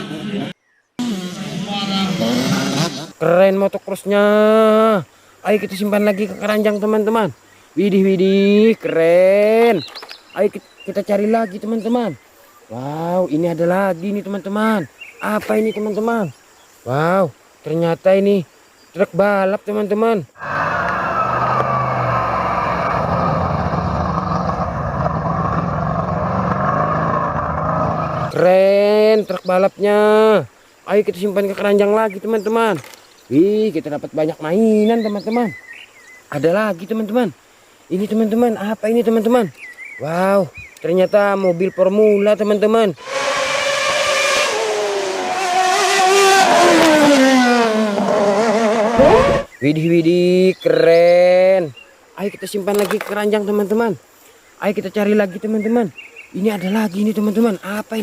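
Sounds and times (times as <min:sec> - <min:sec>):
race car engine revving: 0:01.0 - 0:03.1, 0:20.5 - 0:28.3, 0:43.0 - 0:49.5
truck engine with whine: 0:21.5 - 0:28.3.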